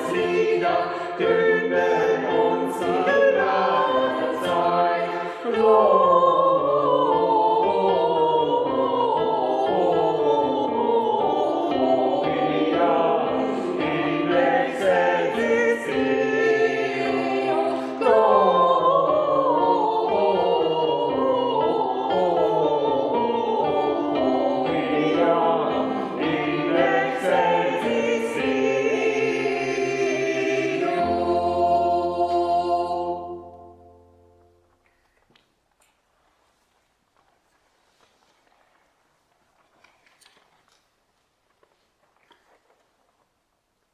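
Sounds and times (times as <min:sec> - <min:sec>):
choir singing: 0:00.0 - 0:34.6.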